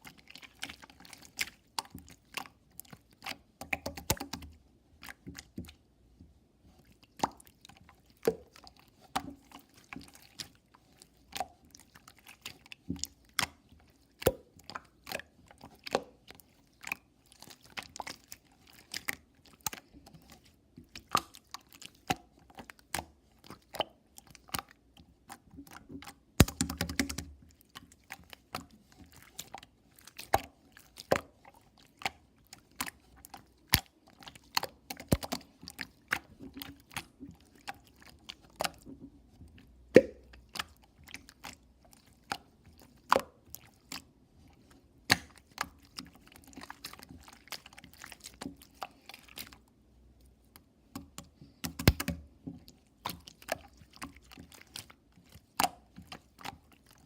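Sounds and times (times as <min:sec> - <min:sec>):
chewing and crunching: 0:40.0 - 0:49.7.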